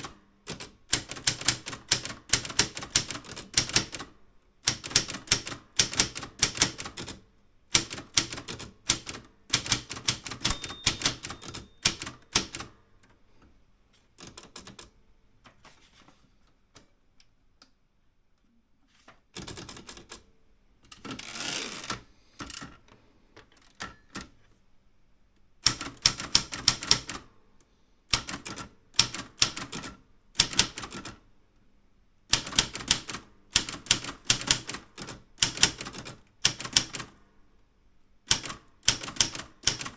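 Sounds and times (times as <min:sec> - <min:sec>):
longer noisy typewriter sound: 0:00.5 - 0:12.7, 0:21.0 - 0:22.7, 0:25.6 - 0:27.2, 0:28.2 - 0:31.2, 0:32.3 - 0:37.2, 0:38.3 - 0:39.9
typewriter key strikes: 0:07.8 - 0:12.7, 0:38.3 - 0:39.9.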